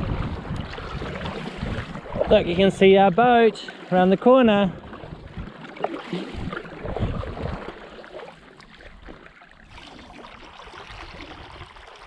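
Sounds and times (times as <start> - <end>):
paddle dipping in water: 0.0 - 12.0
water lapping: 0.0 - 12.0.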